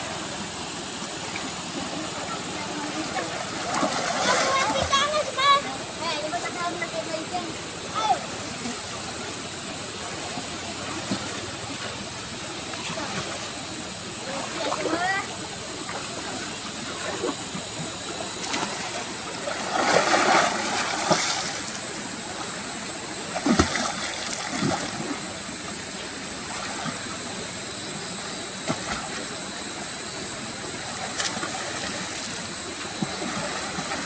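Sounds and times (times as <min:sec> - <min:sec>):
water splashing: 0:01.3 - 0:05.6, 0:10.2 - 0:27.4, 0:30.8 - 0:34.0.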